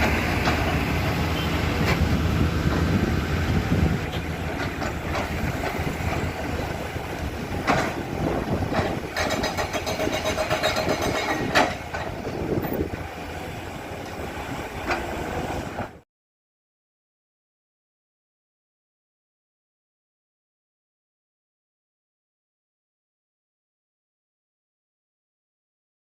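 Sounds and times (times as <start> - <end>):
excavator diesel engine: 0.0 - 16.0.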